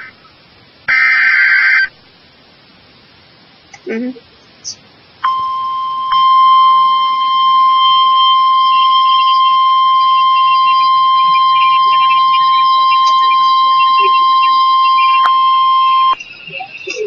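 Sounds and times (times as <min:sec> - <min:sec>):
steady alarm tone: 0:05.2 - 0:17.0.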